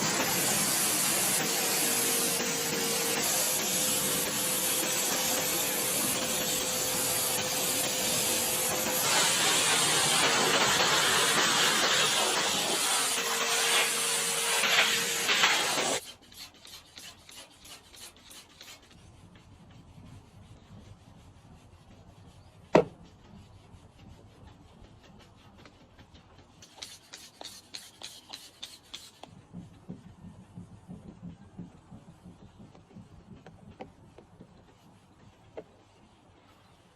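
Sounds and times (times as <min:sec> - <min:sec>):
spray hiss: 0:00.0 - 0:16.0
scrubbing strokes: 0:00.0 - 0:29.2.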